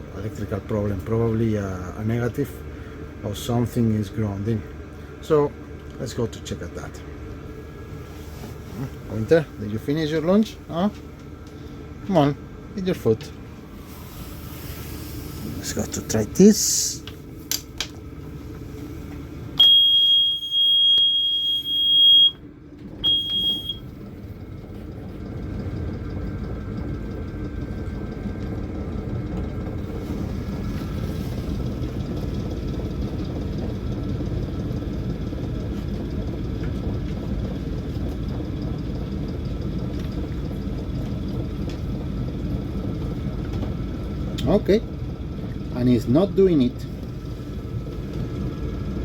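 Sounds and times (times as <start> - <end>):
diesel engine starting and idling: 0.0 - 49.0
alarm buzzer high tone: 19.6 - 22.4, 23.0 - 23.8.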